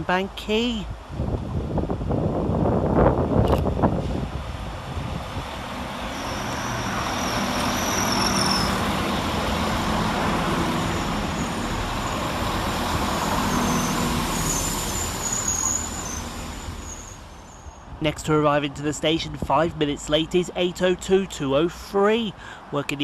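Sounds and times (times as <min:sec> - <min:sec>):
train diesel engine and wheels: 0:00.0 - 0:23.0
high-pitched metallic squeals: 0:06.1 - 0:08.9, 0:13.1 - 0:17.8.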